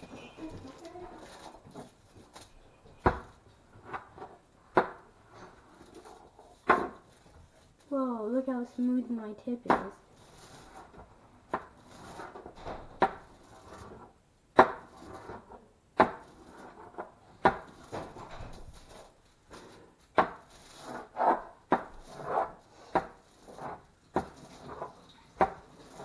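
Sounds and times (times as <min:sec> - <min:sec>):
aluminium foil crinkling: 0:00.0 - 0:03.4, 0:05.4 - 0:09.2, 0:17.6 - 0:21.2.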